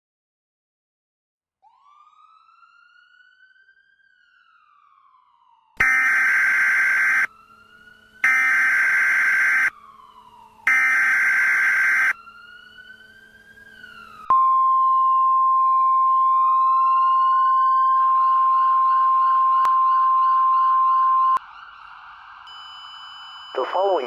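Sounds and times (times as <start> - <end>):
siren wailing: 1.6 - 24.0
buzzing digital header: 5.8 - 7.3, 8.2 - 9.7, 10.7 - 12.1
steady attention tone: 10.7 - 12.1, 23.4 - 24.0.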